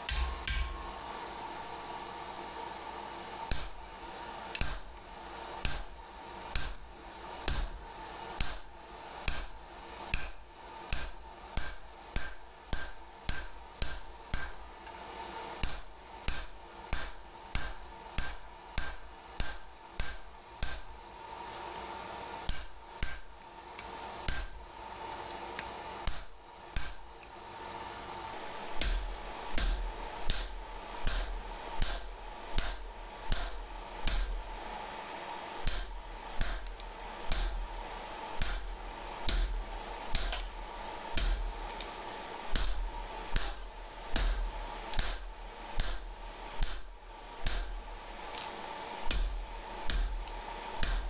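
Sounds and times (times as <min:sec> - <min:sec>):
hammer striking steel on anvil: 0:00.0 - 0:01.0, 0:05.6 - 0:05.9, 0:06.6 - 0:06.8, 0:09.3 - 0:09.6, 0:10.2 - 0:14.6, 0:15.6 - 0:20.9, 0:22.5 - 0:23.3, 0:24.3 - 0:24.6, 0:26.1 - 0:27.0, 0:28.8 - 0:34.4, 0:35.6 - 0:36.7, 0:37.3 - 0:37.6, 0:38.4 - 0:38.7, 0:39.3 - 0:39.6, 0:42.6 - 0:42.8, 0:44.2 - 0:44.4, 0:45.8 - 0:46.0, 0:46.6 - 0:47.7, 0:49.0 - 0:51.0.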